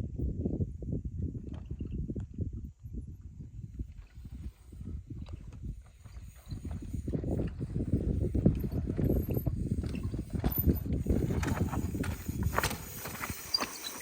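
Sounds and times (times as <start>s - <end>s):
bike tyres clattering on rock: 8.4s - 14.0s.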